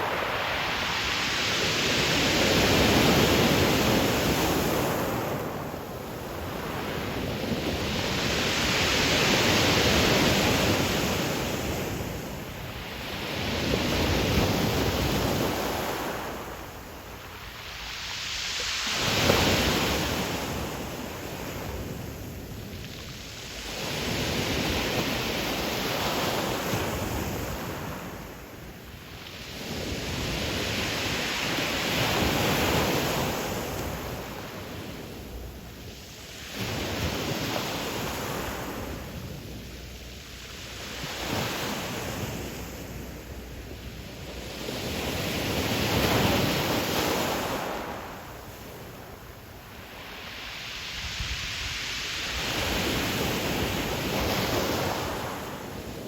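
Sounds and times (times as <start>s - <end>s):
ocean waves breaking on shore: 0.0s - 56.0s
wind on microphone: 50.2s - 56.0s.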